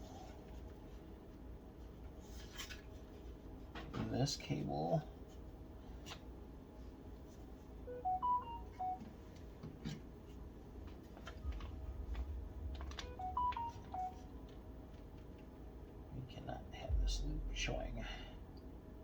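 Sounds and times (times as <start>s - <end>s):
electronic beeping chime: 7.9s - 9.0s, 13.0s - 14.4s
cable clicks and rustles: 10.8s - 15.5s.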